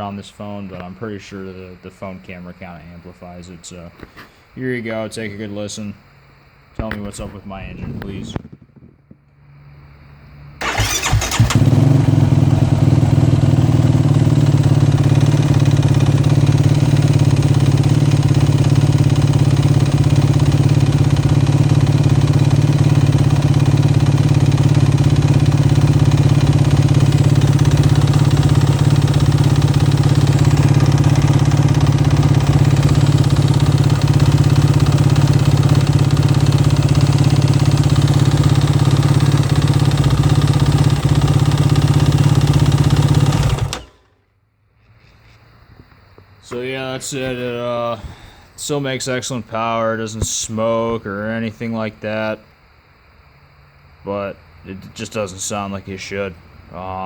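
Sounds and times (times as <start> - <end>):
quad engine starting and idling: 10.6 - 44.2.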